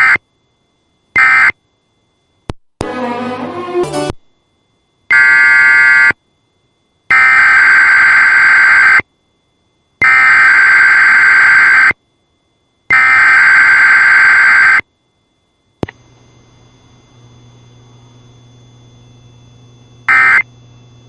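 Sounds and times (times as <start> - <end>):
electronic alarm tone blasts: 1.2 - 1.6, 5.1 - 6.2, 7.1 - 9.0, 10.0 - 12.0, 12.9 - 14.8, 20.1 - 20.5.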